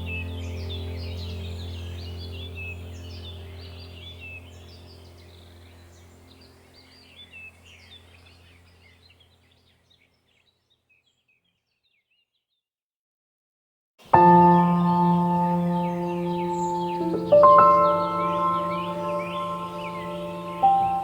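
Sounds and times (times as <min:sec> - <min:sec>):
steady low drone: 0:00.0 - 0:06.6, 0:14.2 - 0:21.0
birds chirping: 0:00.0 - 0:12.4, 0:14.0 - 0:21.0.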